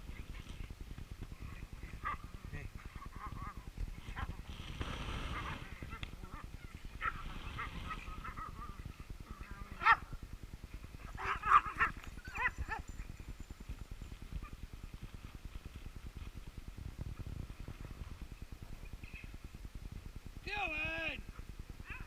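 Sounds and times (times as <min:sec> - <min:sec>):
dog barking: 0:07.0 - 0:08.8, 0:09.8 - 0:10.1, 0:11.1 - 0:12.9.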